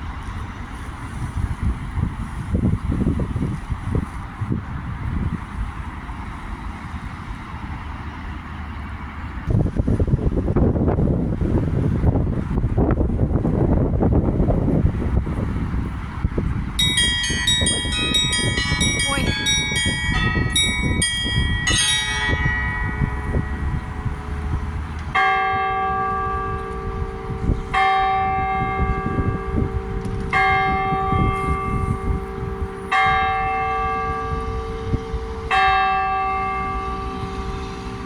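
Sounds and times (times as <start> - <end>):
run of small church bells: 14.0 - 38.0
large bell struck: 16.8 - 38.0
low rumble: 17.6 - 25.2.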